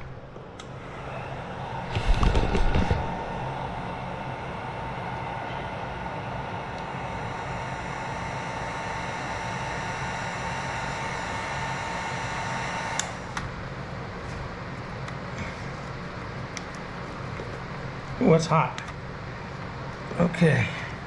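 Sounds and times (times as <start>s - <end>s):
heat gun blowing: 0.0s - 14.0s
heat gun switch click: 12.9s - 13.5s.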